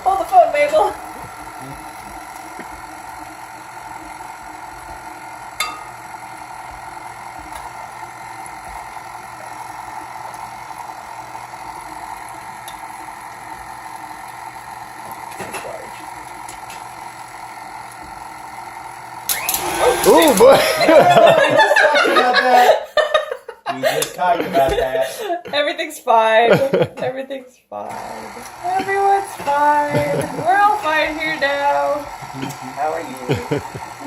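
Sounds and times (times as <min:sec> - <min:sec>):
stand mixer running: 0:00.0 - 0:23.0, 0:27.8 - 0:34.0.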